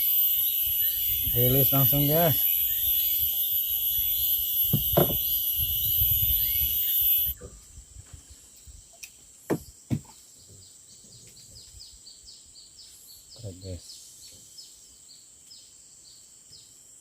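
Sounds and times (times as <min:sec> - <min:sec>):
cicadas buzzing: 0:00.0 - 0:17.0
sharp knocks: 0:04.7 - 0:05.3, 0:09.5 - 0:10.1.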